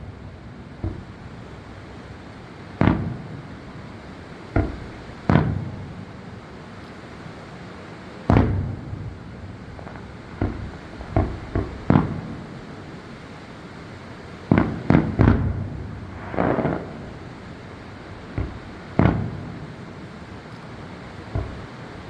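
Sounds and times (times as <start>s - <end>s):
fireworks booming: 0.0s - 6.3s, 8.2s - 22.0s.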